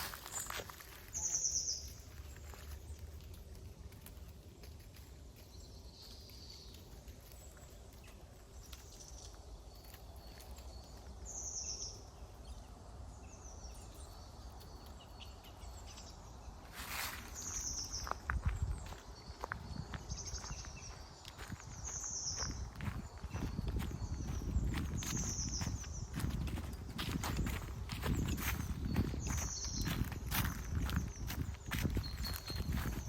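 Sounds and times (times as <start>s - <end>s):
small bird call notes: 0.0s - 2.8s
footsteps crunching dry leaves: 0.0s - 11.1s, 16.2s - 33.0s.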